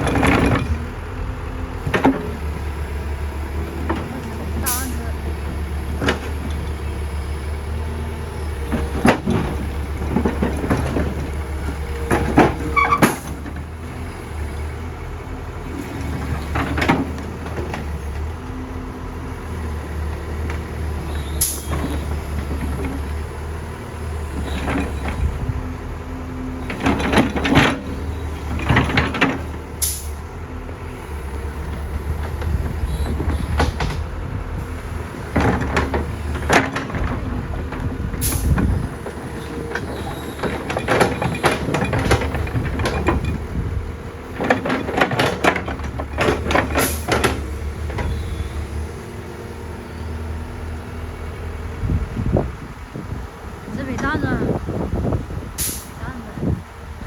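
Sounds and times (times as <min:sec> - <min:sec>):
heavy diesel engine running: 0:00.0 - 0:57.0
metallic clanks and knocks: 0:08.6 - 0:13.7, 0:26.6 - 0:30.1, 0:31.7 - 0:34.2, 0:35.1 - 0:43.7, 0:44.3 - 0:48.4.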